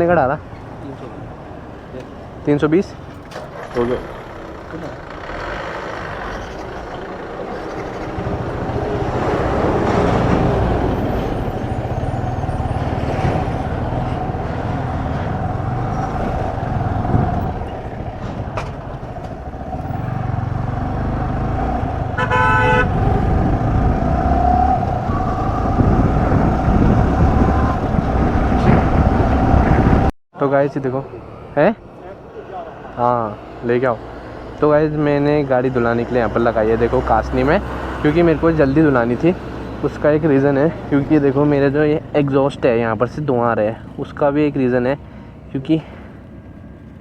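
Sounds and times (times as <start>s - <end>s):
wind noise: 7.3s - 30.1s
vehicle horn honking: 22.2s - 23.2s.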